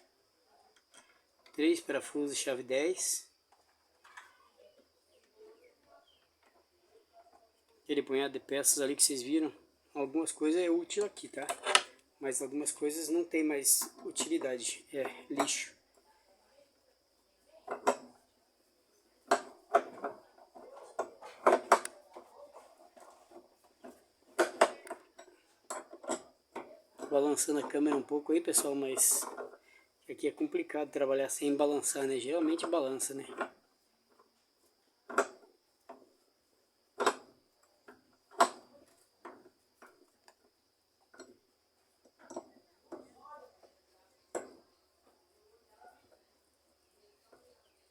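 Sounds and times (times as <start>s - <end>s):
tools and metal parts knocking: 23.0s - 29.6s.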